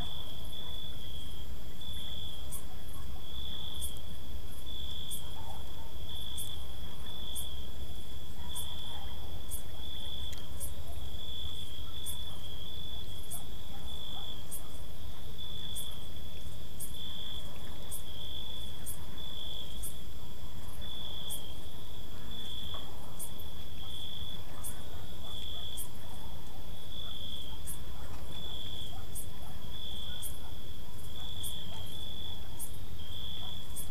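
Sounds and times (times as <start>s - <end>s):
crickets chirping: 0.0s - 33.9s.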